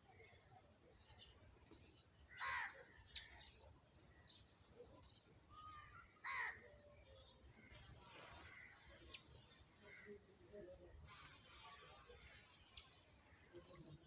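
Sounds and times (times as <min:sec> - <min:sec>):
faint bird chirping: 0:00.0 - 0:14.0.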